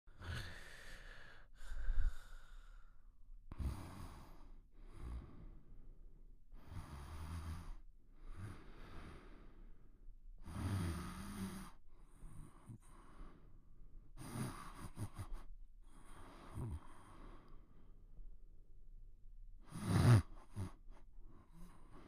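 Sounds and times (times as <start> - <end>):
person snoring softly: 0.2 - 5.9, 6.5 - 17.8, 19.6 - 22.0.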